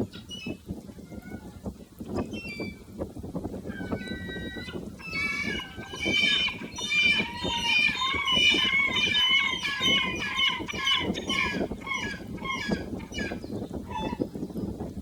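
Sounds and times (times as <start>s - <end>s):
flock of birds calling: 3.7s - 14.3s.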